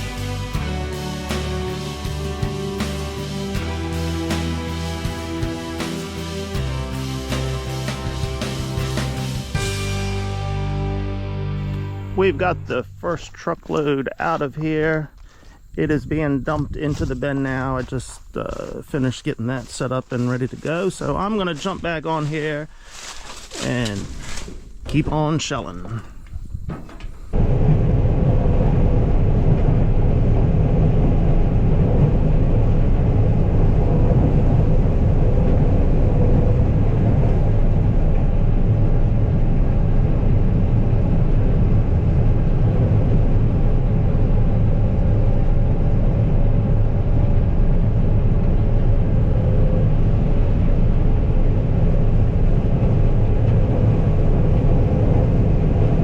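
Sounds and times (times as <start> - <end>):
combine harvester droning: 0.0 - 56.0.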